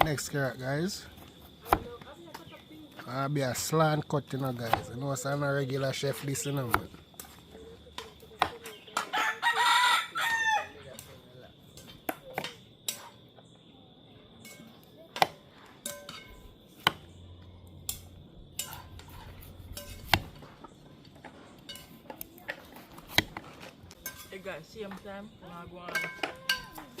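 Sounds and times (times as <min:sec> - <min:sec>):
rooster crowing: 0:09.0 - 0:10.9.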